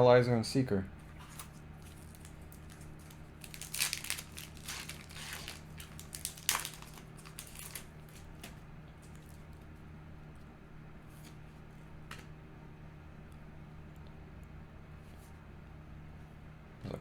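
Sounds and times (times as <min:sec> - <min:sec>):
foil wrapper crinkling: 0:01.1 - 0:09.7.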